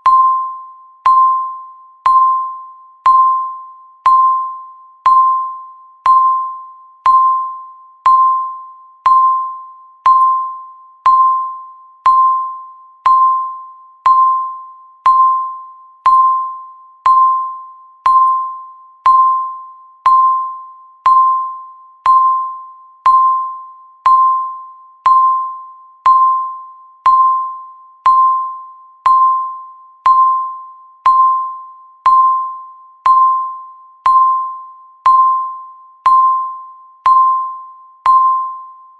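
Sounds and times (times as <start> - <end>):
timer beeping: 0.0 - 38.9.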